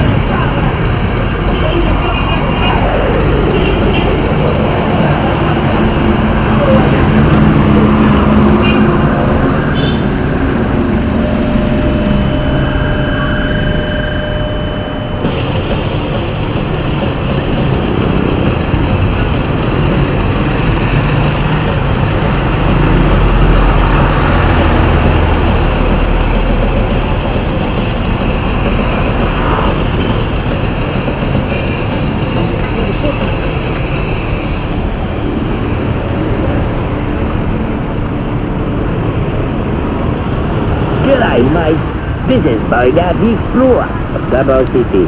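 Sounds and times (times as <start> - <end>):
road traffic rumble: 0.0 - 45.0.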